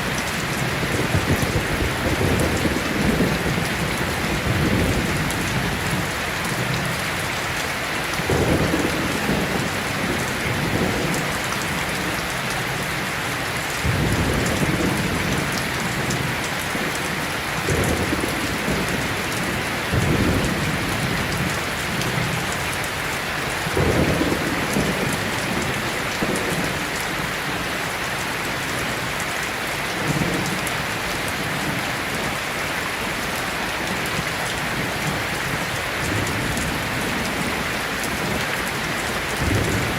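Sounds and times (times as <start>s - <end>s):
thunder rumbling: 0.0s - 7.3s, 8.2s - 12.8s, 13.8s - 22.4s, 23.6s - 27.6s, 33.9s - 39.9s
steady rain: 0.0s - 39.9s.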